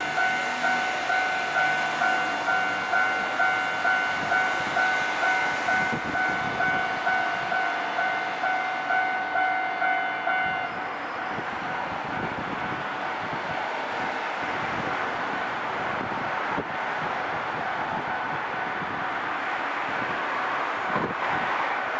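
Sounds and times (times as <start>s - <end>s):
level crossing warning bell: 0.0s - 13.4s.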